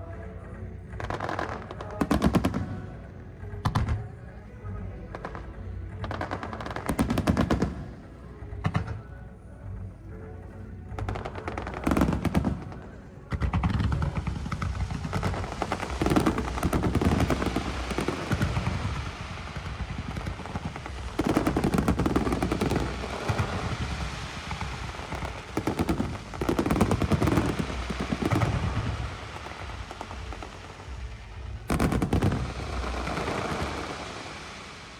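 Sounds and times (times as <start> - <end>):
fireworks bangs and crackle: 0.8 - 9.4, 10.4 - 34.9.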